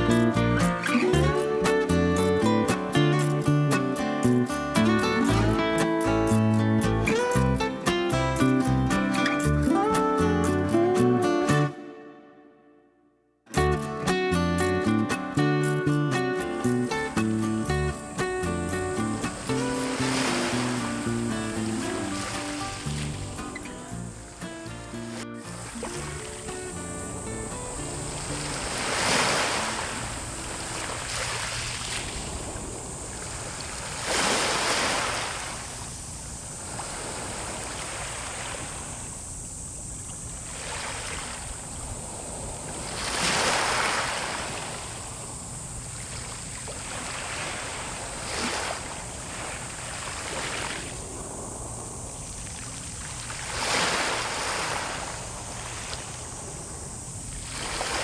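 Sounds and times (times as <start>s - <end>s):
waves breaking on shore: 17.9s - 58.0s
constant wash of water: 18.2s - 58.0s.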